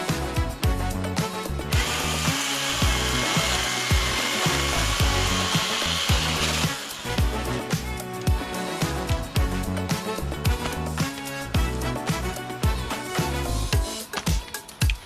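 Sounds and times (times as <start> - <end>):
music with steady beat: 0.0 - 15.0
chainsaw cutting wood: 1.7 - 8.0.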